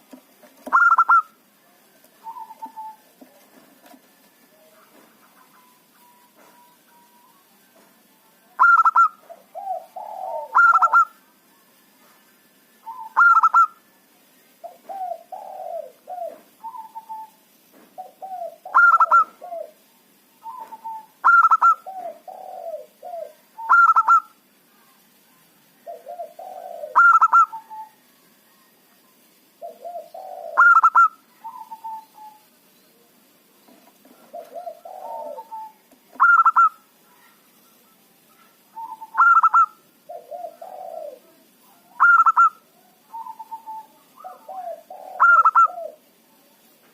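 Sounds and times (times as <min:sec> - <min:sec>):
dove cooing: 0:00.6 - 0:01.4, 0:02.0 - 0:07.1, 0:08.6 - 0:11.2, 0:12.8 - 0:13.8, 0:14.6 - 0:17.4, 0:18.0 - 0:24.4, 0:25.8 - 0:28.0, 0:29.6 - 0:32.5, 0:34.0 - 0:37.3, 0:38.6 - 0:46.1.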